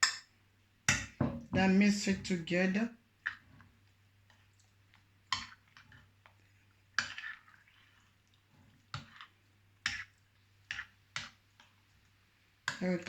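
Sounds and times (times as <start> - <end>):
wet squishing: 4.3 - 11.6
utensil scraping a bowl: 7.0 - 11.3.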